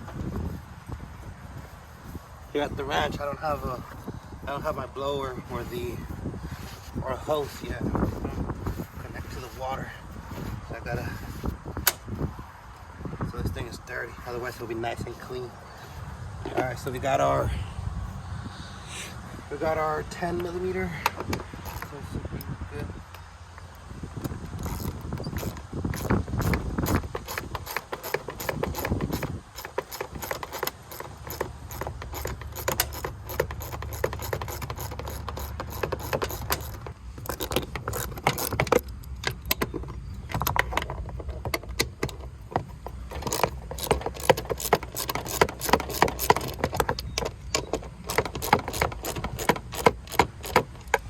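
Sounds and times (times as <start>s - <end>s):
ratchet wrench clicking: 21.0s - 22.0s, 24.3s - 39.7s, 43.1s - 51.0s.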